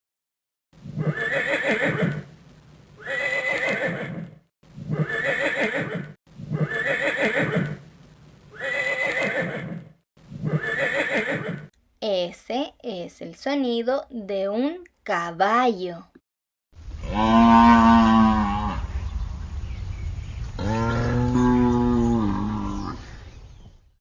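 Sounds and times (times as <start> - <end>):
horse neighing: 1.0 - 2.2, 3.0 - 7.8, 8.5 - 11.7.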